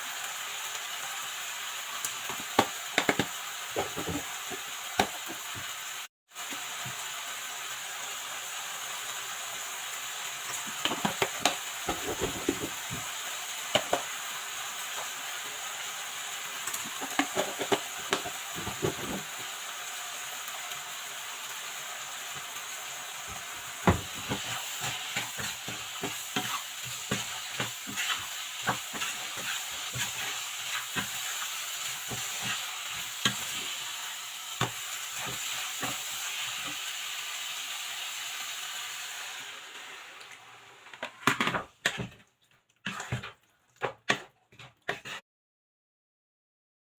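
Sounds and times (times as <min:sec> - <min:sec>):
curry sizzling in a pan: 0:00.0 - 0:45.2
spoon scraping a pan: 0:16.7 - 0:19.3, 0:23.3 - 0:33.8, 0:42.8 - 0:45.2.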